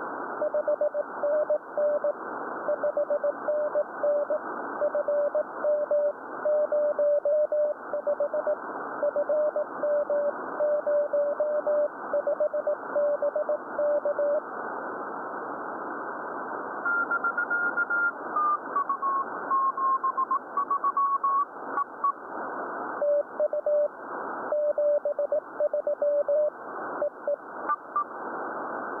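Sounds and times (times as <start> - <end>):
radio receiver hiss: 0.0 - 29.0
morse code beeps: 0.4 - 2.1, 2.7 - 14.4, 16.9 - 21.4, 23.0 - 23.9, 24.5 - 28.1.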